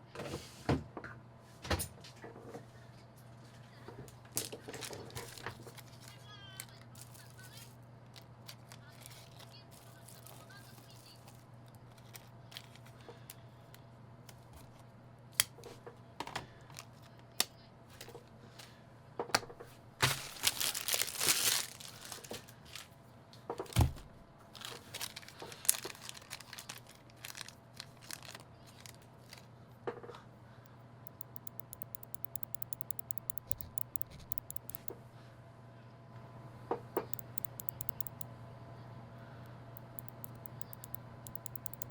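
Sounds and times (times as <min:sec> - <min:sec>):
packaging tearing and crinkling: 0:20.0 - 0:22.3, 0:24.6 - 0:28.4
faint high ticks: 0:31.1 - 0:34.9, 0:37.0 - 0:38.3, 0:39.8 - 0:41.9
packaging clicks and taps: 0:31.1 - 0:34.9, 0:37.0 - 0:38.2, 0:39.8 - 0:41.9.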